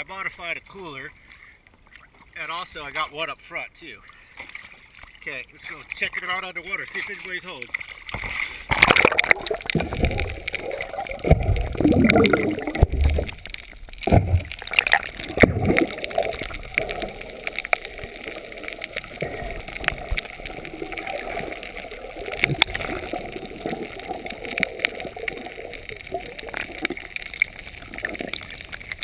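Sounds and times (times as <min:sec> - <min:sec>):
water gurgling underwater: 0:07.8 - 0:29.0
bubbly water surges: 0:08.1 - 0:29.0
faint crackling ticks: 0:09.3 - 0:29.0.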